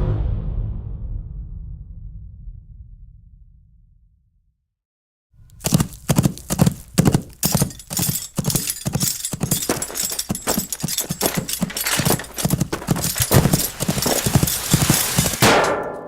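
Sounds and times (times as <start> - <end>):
horse hoofbeats on dirt: 5.5 - 15.8.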